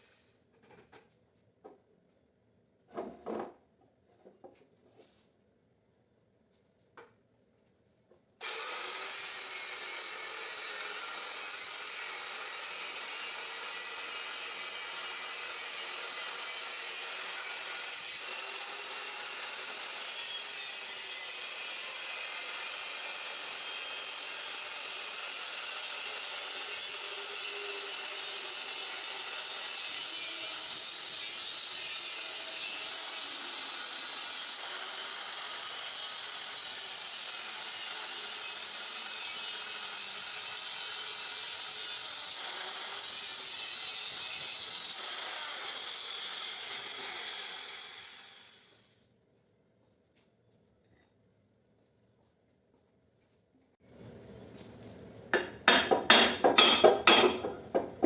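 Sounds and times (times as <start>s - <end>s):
power tool cutting steel: 8.4s - 48.9s, 55.3s - 58.0s.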